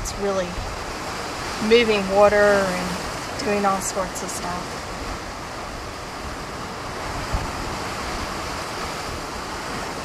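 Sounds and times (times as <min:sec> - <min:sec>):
surf washing against rocks: 0:00.0 - 0:10.0
wind bump on microphone: 0:04.6 - 0:10.0.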